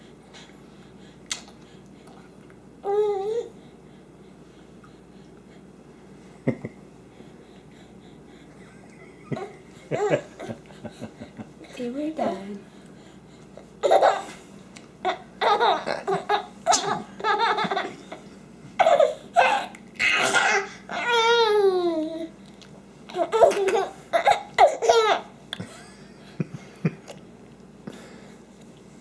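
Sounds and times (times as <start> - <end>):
people laughing: 8.8 - 11.6
baby laughing: 9.3 - 11.3, 13.8 - 14.4, 15.0 - 18.2, 18.8 - 22.0, 23.1 - 25.3.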